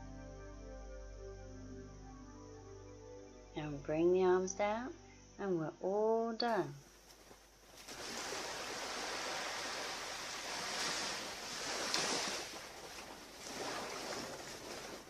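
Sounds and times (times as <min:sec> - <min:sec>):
waves breaking on a beach: 0:07.8 - 0:15.0.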